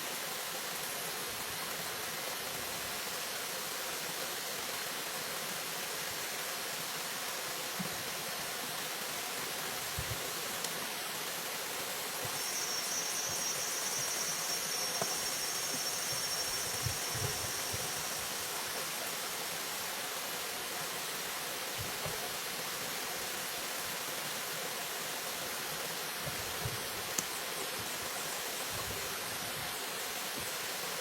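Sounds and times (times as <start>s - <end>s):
insect trilling: 12.3s - 18.6s.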